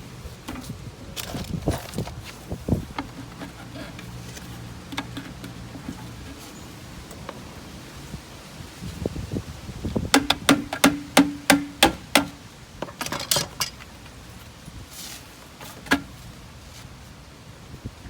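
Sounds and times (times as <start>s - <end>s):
sharp ringing knocks: 10.2s - 12.4s.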